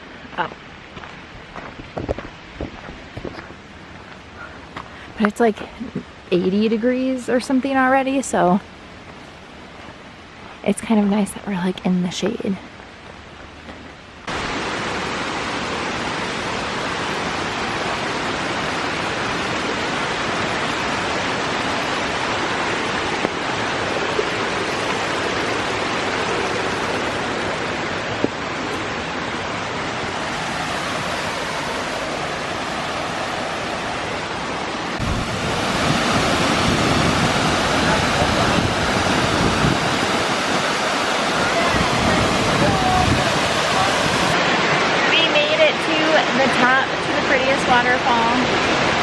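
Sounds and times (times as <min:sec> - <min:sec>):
river water rushing: 0:12.7 - 0:49.0.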